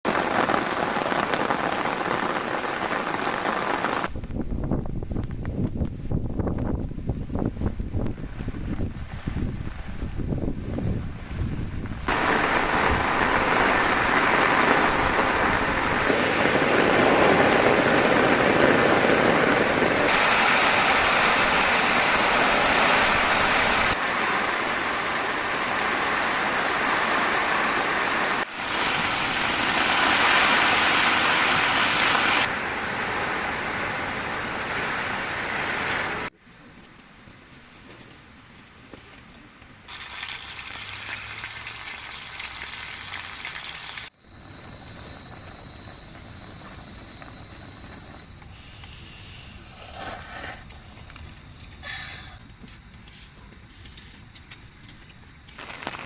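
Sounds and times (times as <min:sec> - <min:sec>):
heavy rain falling: 0:00.0 - 0:04.1, 0:11.2 - 0:36.3, 0:39.9 - 0:48.2.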